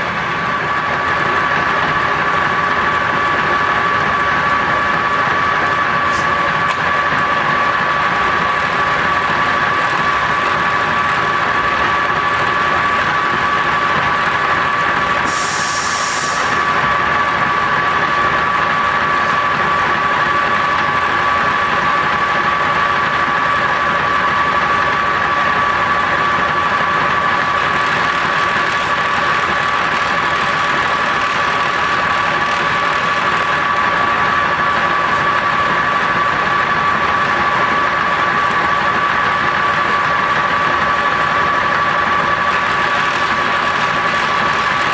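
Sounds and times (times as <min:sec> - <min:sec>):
lathe whining: 0:00.0 - 0:44.9
brief hiss: 0:15.3 - 0:16.6.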